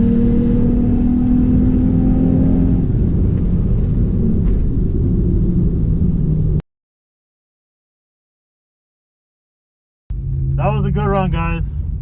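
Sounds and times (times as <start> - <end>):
car engine running: 10.1 - 12.0.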